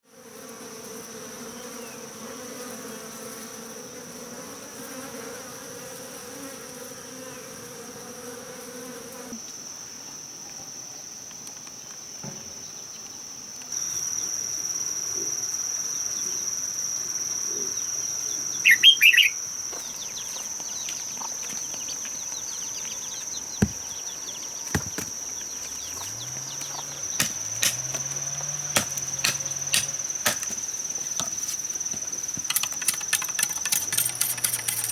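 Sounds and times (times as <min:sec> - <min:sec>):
insects droning: 0:00.0 - 0:34.9
sharp knocks: 0:23.6 - 0:24.0, 0:24.7 - 0:25.4, 0:26.0 - 0:33.3.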